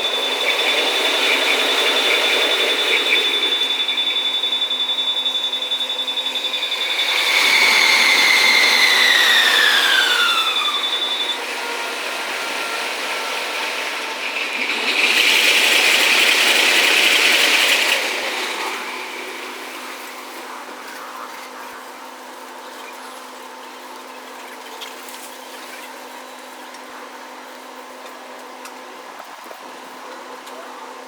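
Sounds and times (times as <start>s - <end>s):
level crossing alarm ringing: 0.0s - 20.8s
passing train whine: 0.0s - 22.5s.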